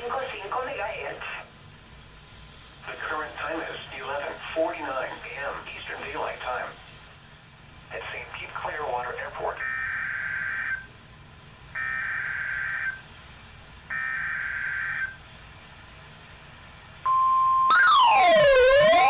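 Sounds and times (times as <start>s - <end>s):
buzzy data bursts: 17.7s - 19.0s
siren-like wail: 17.7s - 19.0s
steady weather radio alert tone: 17.7s - 19.0s.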